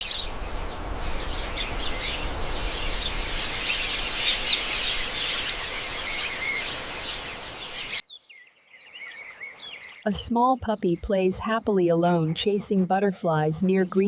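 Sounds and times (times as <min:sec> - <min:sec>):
background hiss: 0:00.0 - 0:08.0
many birds chirping: 0:00.0 - 0:14.0.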